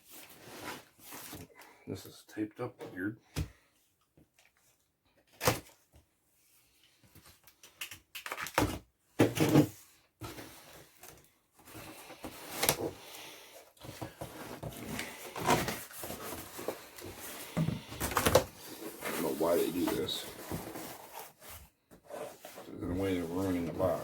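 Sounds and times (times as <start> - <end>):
cardboard box scrapes and knocks: 13.8 - 24.0.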